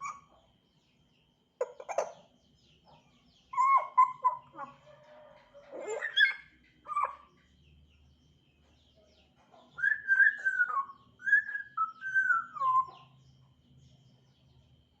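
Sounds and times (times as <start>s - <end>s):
parrot whistling: 9.8s - 13.0s.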